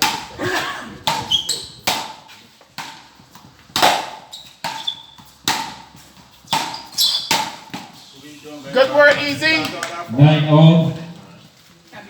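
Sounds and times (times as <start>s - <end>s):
ball bouncing on road: 0.0s - 0.4s, 1.1s - 8.0s
wooden paddles striking ball: 0.0s - 0.4s, 1.0s - 8.0s.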